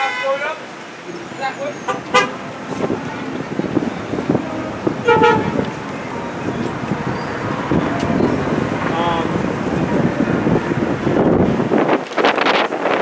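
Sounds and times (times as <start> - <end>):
car horn toot: 0.0 - 0.6, 1.2 - 10.0
street traffic: 0.0 - 13.0.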